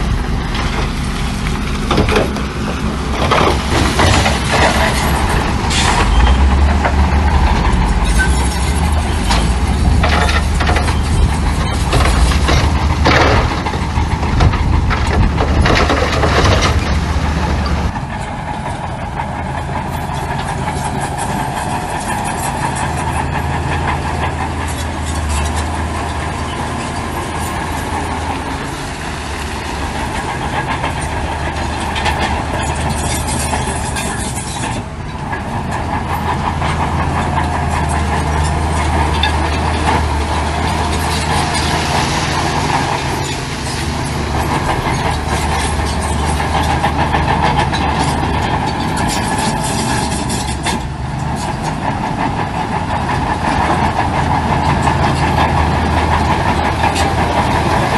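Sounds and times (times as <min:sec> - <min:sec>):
bulldozer diesel engine running: 0:00.0 - 0:57.9
steel tracks clattering: 0:00.0 - 0:57.9.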